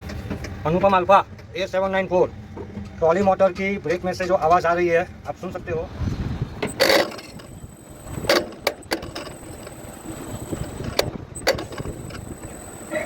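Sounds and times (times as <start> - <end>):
motor low hum: 6.4 - 13.0.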